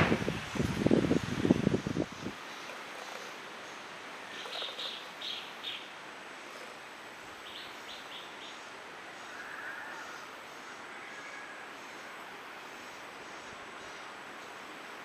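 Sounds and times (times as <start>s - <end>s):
steady outdoor hiss: 0.0s - 15.0s
woodpecker calling: 4.3s - 5.8s.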